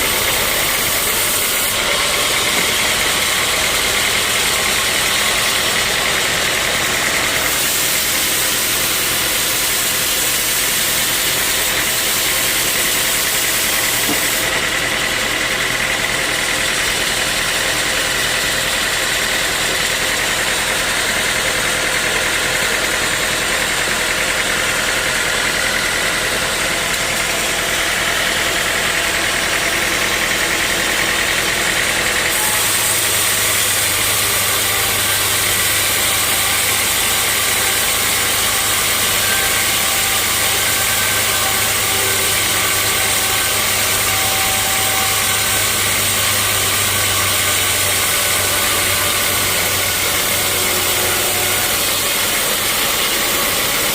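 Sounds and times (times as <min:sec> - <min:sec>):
sawmill machinery drone: 0:00.0 - 0:53.9
deep steady hum: 0:40.8 - 0:53.9.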